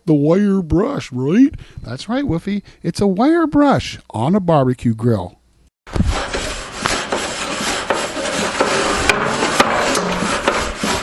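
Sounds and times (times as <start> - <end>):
wire brush scraping grill: 5.9 - 11.0.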